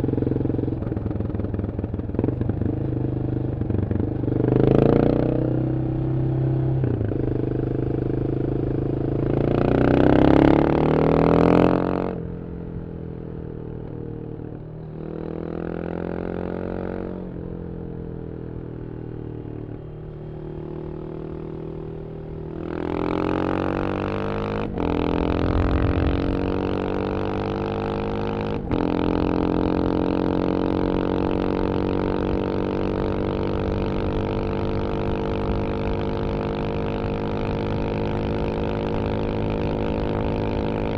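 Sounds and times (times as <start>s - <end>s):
motorcycle engine revving: 20.2s - 40.9s.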